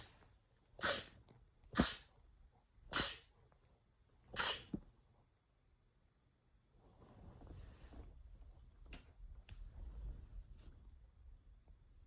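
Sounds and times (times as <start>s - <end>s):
person sneezing: 2.9s - 3.3s, 4.4s - 4.8s.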